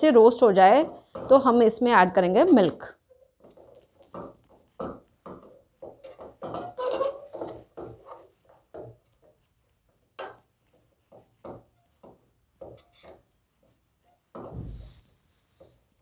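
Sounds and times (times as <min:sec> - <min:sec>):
spoon scraping and knocking pan: 0:02.5 - 0:14.6.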